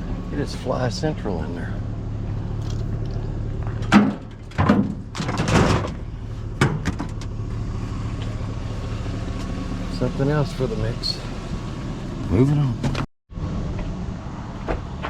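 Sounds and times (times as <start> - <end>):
truck engine idling: 0.0 - 13.0
knocks and clattering: 3.6 - 7.4.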